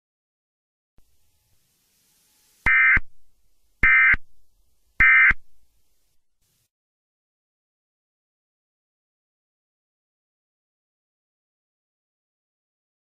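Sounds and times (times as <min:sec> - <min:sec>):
digital data tone bursts: 0:02.6 - 0:03.1, 0:03.8 - 0:04.2, 0:05.0 - 0:05.4.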